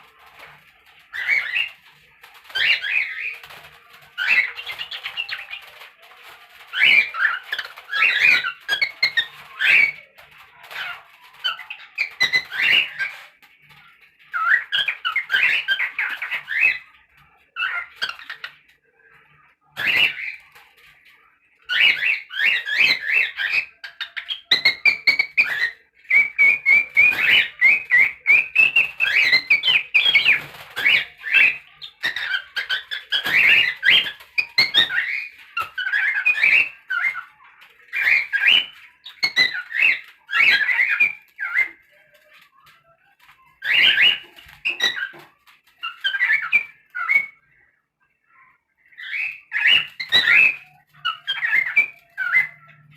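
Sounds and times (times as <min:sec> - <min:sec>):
cockatiel chattering and whistling: 0:01.0 - 0:03.5, 0:04.2 - 0:05.8, 0:06.7 - 0:10.0, 0:10.8 - 0:13.2, 0:14.3 - 0:16.9, 0:19.8 - 0:20.4, 0:21.7 - 0:37.3, 0:37.9 - 0:41.8, 0:43.6 - 0:47.5, 0:48.9 - 0:52.9.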